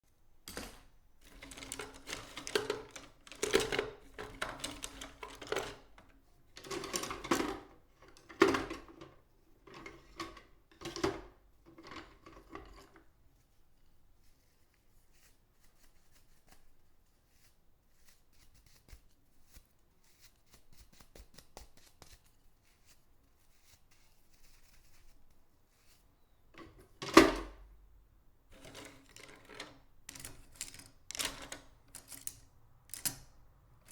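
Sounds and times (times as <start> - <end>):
paintbrush scrubbing a surface: 13.4 - 26.3.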